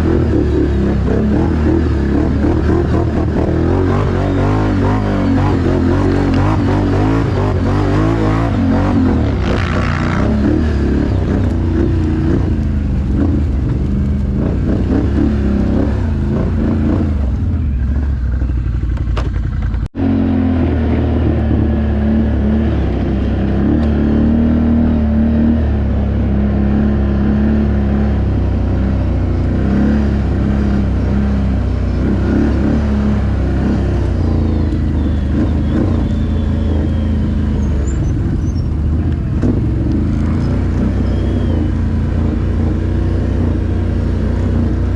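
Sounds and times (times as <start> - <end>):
atv engine droning: 0.0 - 44.9.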